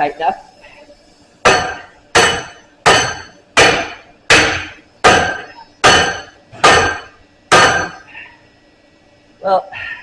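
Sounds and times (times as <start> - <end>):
hammer striking steel bar: 1.4 - 8.0.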